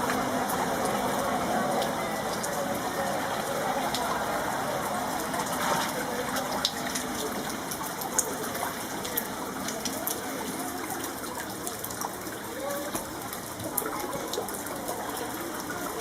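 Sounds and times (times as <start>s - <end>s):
rain gushing water: 0.0s - 16.0s.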